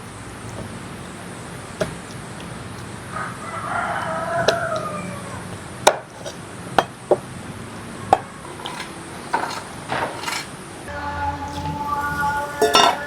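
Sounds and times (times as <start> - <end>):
rooster crowing: 3.1 - 5.7.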